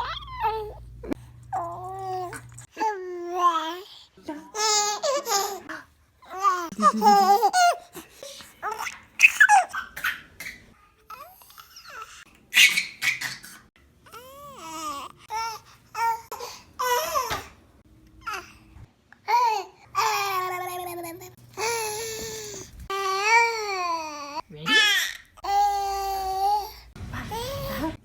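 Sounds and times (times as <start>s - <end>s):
baby babbling and laughing: 0.0s - 3.8s, 6.3s - 7.9s, 19.3s - 27.4s.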